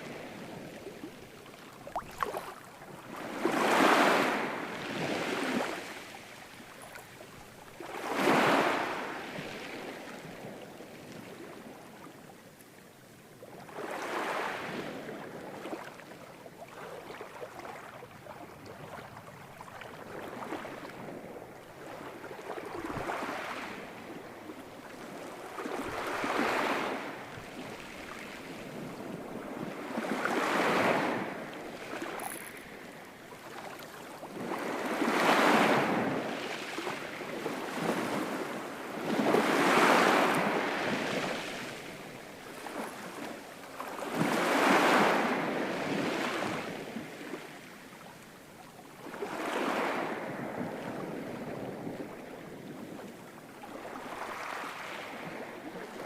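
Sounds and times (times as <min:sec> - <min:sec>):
ocean waves breaking: 0:00.0 - 0:06.3.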